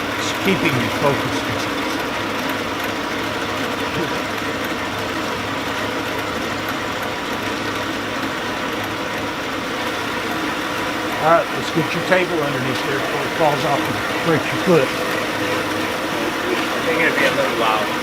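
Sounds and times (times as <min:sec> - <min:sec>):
machine humming: 0:00.0 - 0:18.0.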